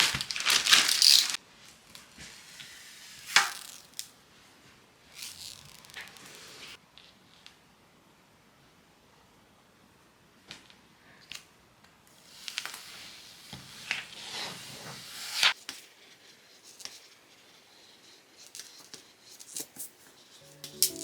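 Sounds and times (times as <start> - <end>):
packaging rustling and tearing: 0.0 - 1.4.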